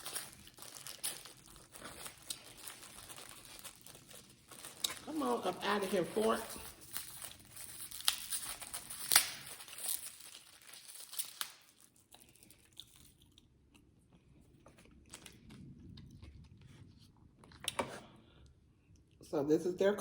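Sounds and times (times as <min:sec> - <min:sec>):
faint plastic rustling: 0:00.0 - 0:13.3
plastic packaging crinkling and tearing: 0:00.0 - 0:13.4.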